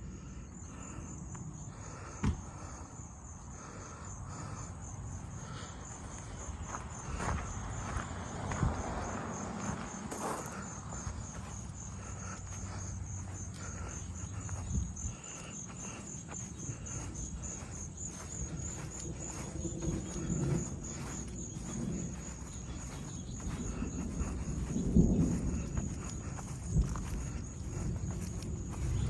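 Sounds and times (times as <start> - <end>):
insects chirping in a trill: 0.0 - 29.0
low outdoor rumble: 0.0 - 29.0.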